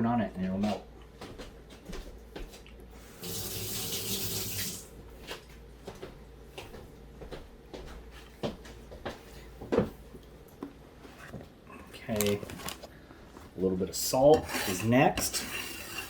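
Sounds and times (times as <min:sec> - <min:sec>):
tap water running into sink: 0:03.2 - 0:04.9.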